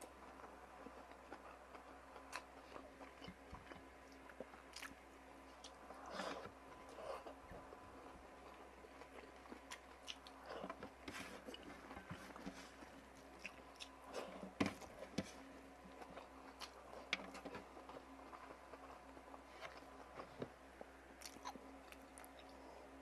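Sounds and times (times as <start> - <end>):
person chewing and biting food: 8.4 - 20.4, 21.2 - 22.6.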